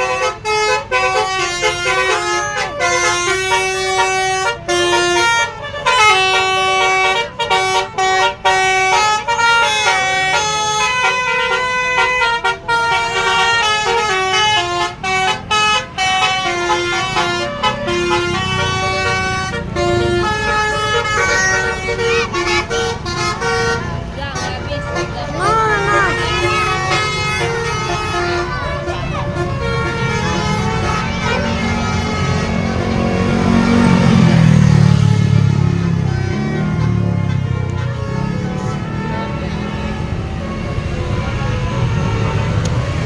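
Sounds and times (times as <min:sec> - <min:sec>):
multi-tone horn playing a melody: 0:00.0 - 0:43.0.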